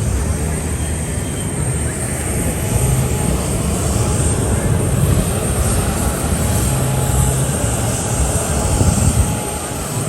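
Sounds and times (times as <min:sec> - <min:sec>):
aircraft engine rumble: 0:00.0 - 0:10.0.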